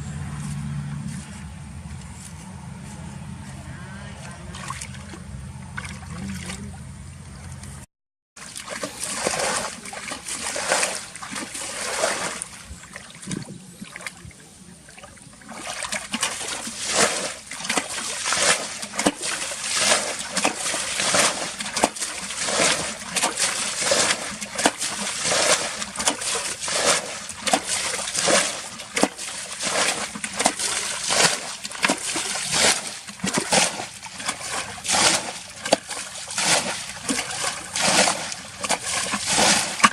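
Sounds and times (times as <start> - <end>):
low hum: 0.0 - 7.9
water splashing and sloshing: 4.0 - 39.9.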